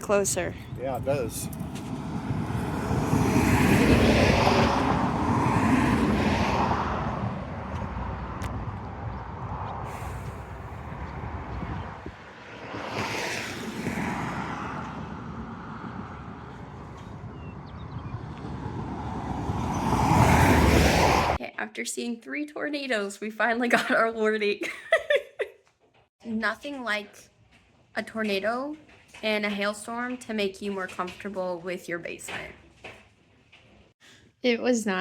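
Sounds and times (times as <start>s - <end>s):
wind buffeting microphone: 0.0s - 21.4s.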